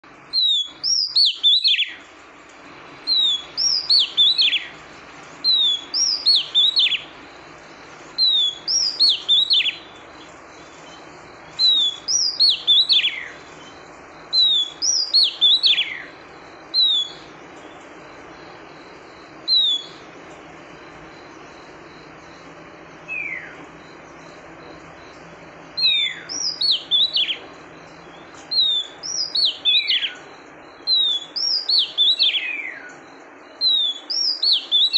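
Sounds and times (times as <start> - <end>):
magpie-robin whistled calls: 0.3 - 2.0, 3.0 - 4.8, 5.4 - 7.2, 8.2 - 17.9, 19.4 - 20.1, 23.0 - 23.6, 25.7 - 34.9.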